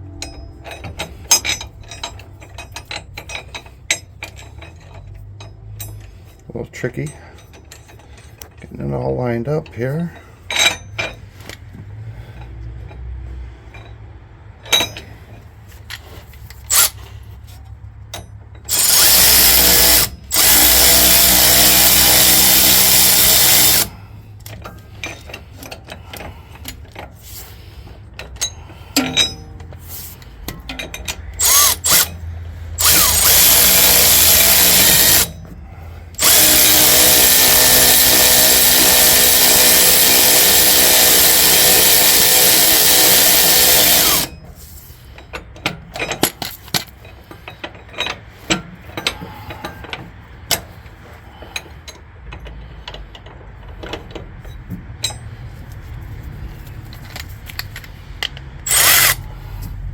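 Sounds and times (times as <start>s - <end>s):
metallic clicks and clinks: 0.1s - 8.7s, 51.4s - 59.9s
power tool driving bolts: 16.7s - 17.0s, 18.7s - 26.8s, 30.2s - 32.2s, 32.8s - 44.4s, 57.1s - 59.7s.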